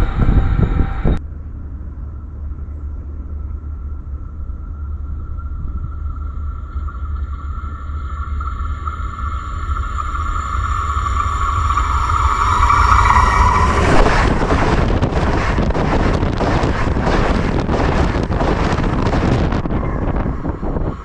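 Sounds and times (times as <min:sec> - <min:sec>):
rail ringing tone: 0:02.2 - 0:15.1
train wheels rolling on rail: 0:08.0 - 0:21.0.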